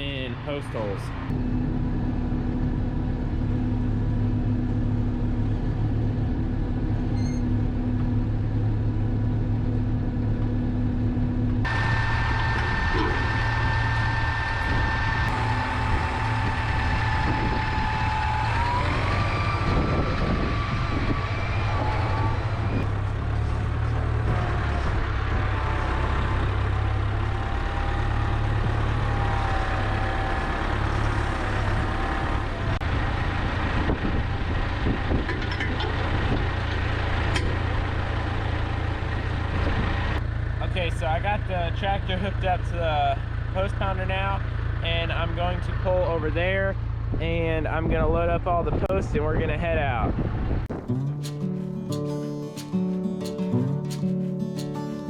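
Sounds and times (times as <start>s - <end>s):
tractor diesel engine running: 0.0s - 55.0s
high whine: 9.9s - 23.0s.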